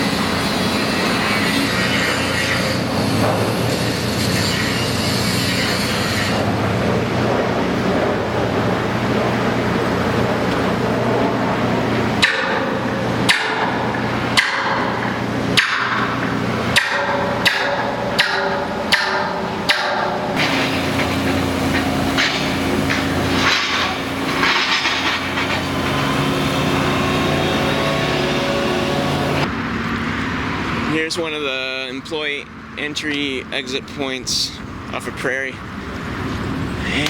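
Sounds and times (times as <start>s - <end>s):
machinery humming: 0.0s - 37.0s
hammer striking steel: 12.2s - 29.5s.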